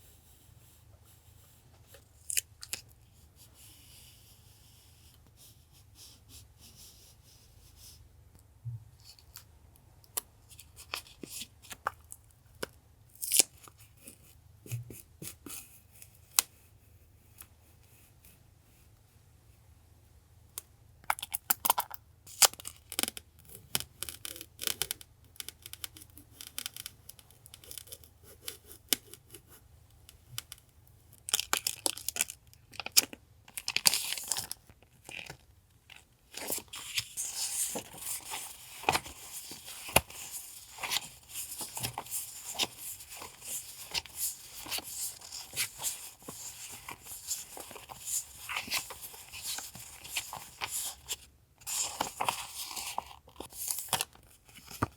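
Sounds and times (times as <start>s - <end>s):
packaging crinkling and tearing: 31.2s - 54.9s.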